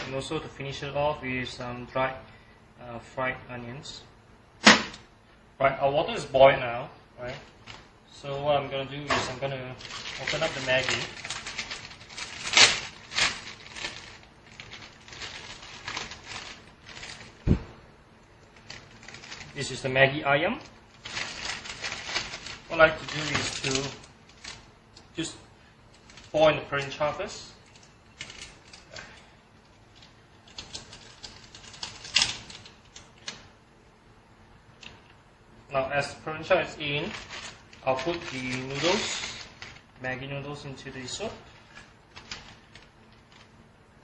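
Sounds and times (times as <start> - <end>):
plastic packet crinkling and tearing: 9.1 - 17.5, 18.4 - 25.1, 25.9 - 27.0, 27.6 - 29.2, 29.9 - 33.4, 36.9 - 40.0, 41.2 - 43.6.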